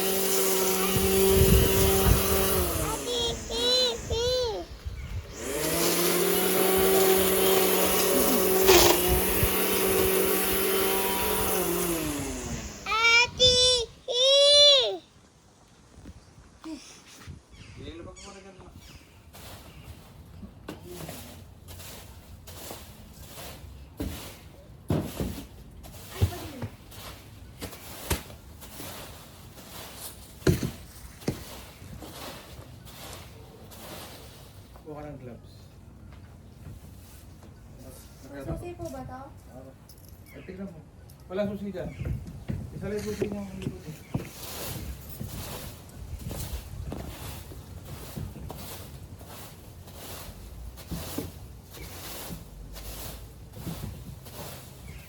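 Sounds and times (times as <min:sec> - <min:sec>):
machine motor whining: 0:00.0 - 0:13.6.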